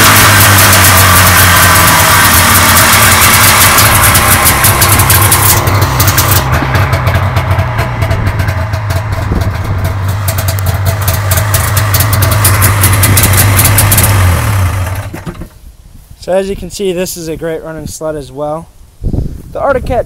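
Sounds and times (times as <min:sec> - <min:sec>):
two-stroke engine idling: 0:00.0 - 0:15.6.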